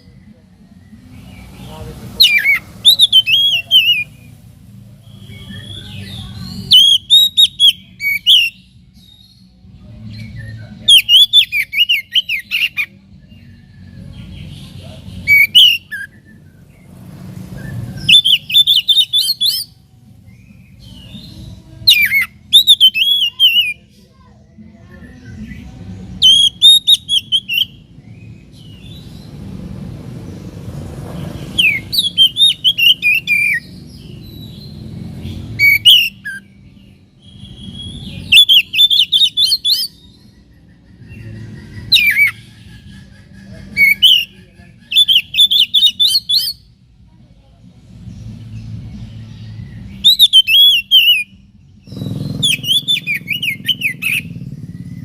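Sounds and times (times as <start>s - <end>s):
bird singing whistled phrases: 2.2s - 4.3s, 5.0s - 9.2s, 10.1s - 13.4s, 15.2s - 16.5s, 17.6s - 19.8s, 20.4s - 23.9s, 26.2s - 29.0s, 31.6s - 34.6s, 35.5s - 36.6s, 37.2s - 40.2s, 43.8s - 46.7s, 49.8s - 51.5s, 52.4s - 54.4s.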